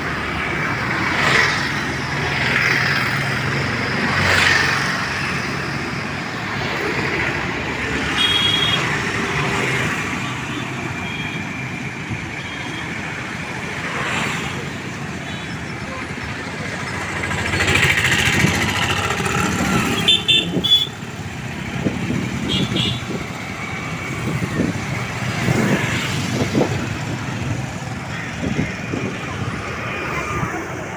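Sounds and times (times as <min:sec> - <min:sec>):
vehicles passing: 0:00.0 - 0:30.9
car horn toots: 0:08.2 - 0:08.9, 0:20.0 - 0:21.0.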